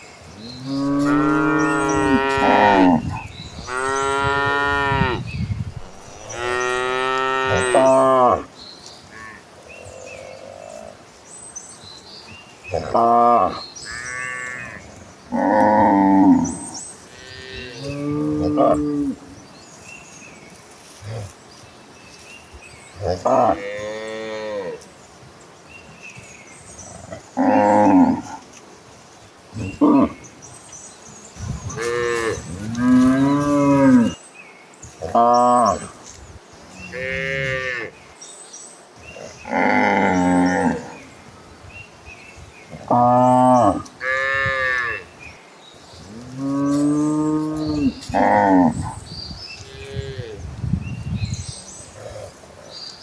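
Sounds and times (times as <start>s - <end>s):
cattle mooing: 0.7s - 8.5s.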